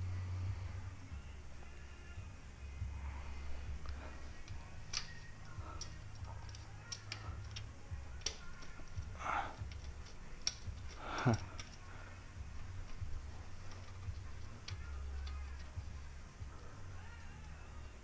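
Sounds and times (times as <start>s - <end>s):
small clicks and taps: 3.8s - 11.8s, 13.7s - 15.8s.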